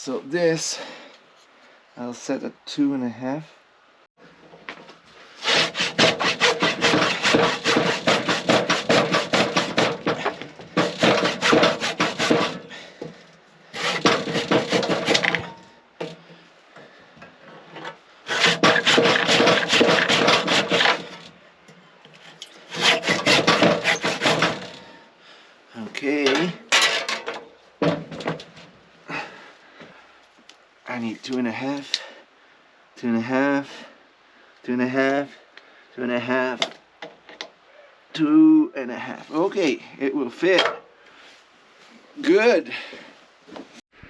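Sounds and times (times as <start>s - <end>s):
hand saw cutting wood: 5.4s - 16.2s, 18.3s - 21.4s, 22.1s - 25.0s.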